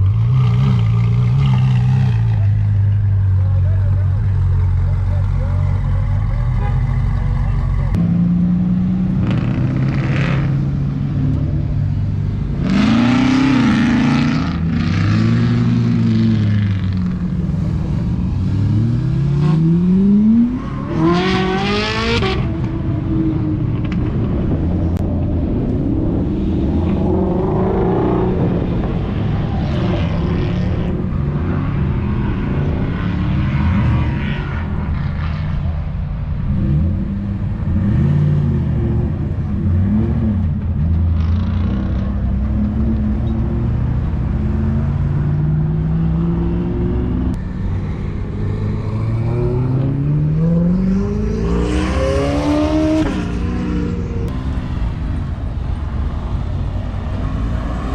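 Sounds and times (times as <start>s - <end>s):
car engines idling: 0.0s - 8.1s
car engines revving: 0.0s - 57.9s.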